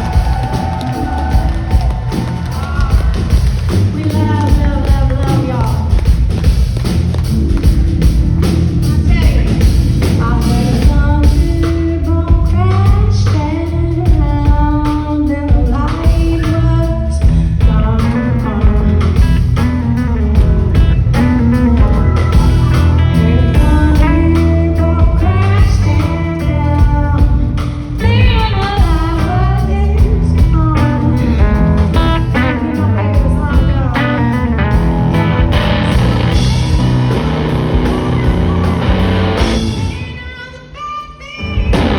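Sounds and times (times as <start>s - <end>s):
electric guitar: 0.0s - 40.2s, 41.4s - 41.9s
live blues-rock band: 0.0s - 40.2s, 41.4s - 41.9s
person singing: 8.9s - 41.9s.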